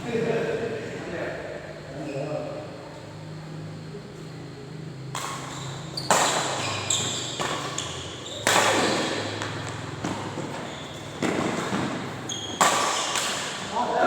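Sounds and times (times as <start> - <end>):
sharp hits echoing in a hall: 5.1 - 14.0.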